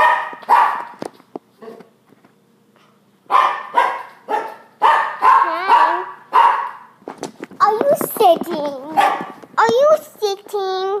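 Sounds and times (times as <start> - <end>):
dog barking: 0.0 - 1.0, 3.3 - 7.0, 8.9 - 9.4.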